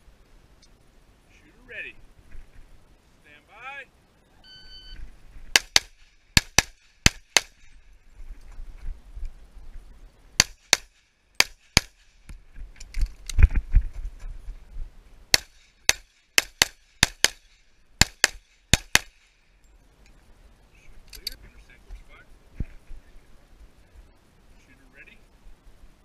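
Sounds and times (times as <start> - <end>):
pistol shots: 5.5 - 7.6, 15.3 - 19.3.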